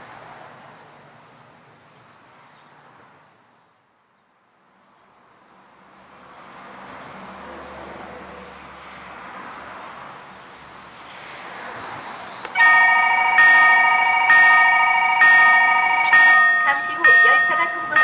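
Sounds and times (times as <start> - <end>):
road traffic passing: 0.0 - 18.0
level crossing warning bell: 12.5 - 18.0.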